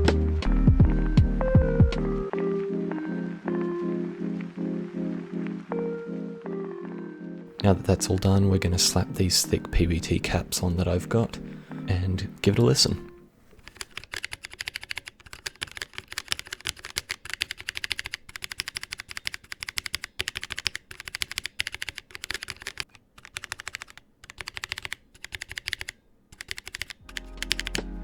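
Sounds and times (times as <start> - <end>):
mechanical keyboard keys clattering: 13.6 - 27.8.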